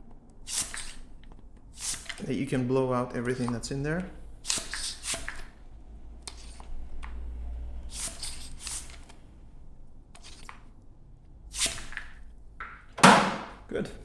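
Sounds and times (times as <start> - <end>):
syringe hissing puffs of air: 0.4 - 2.3, 4.4 - 5.6, 7.9 - 9.1, 11.5 - 12.1.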